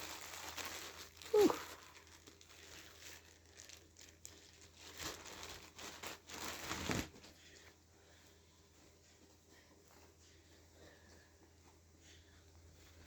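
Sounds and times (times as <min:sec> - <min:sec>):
packaging crinkling and tearing: 0:00.0 - 0:07.3.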